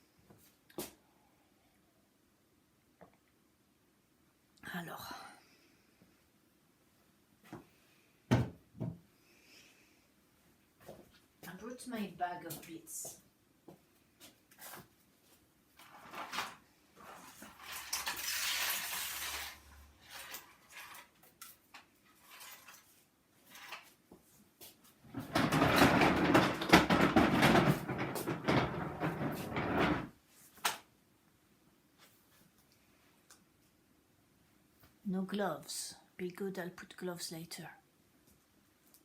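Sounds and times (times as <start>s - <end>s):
rustling and clattering: 14.2s - 30.8s.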